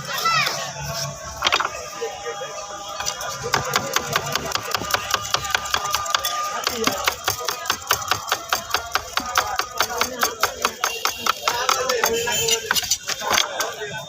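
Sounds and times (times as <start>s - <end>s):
utensil tapping fast: 3.5s - 12.9s.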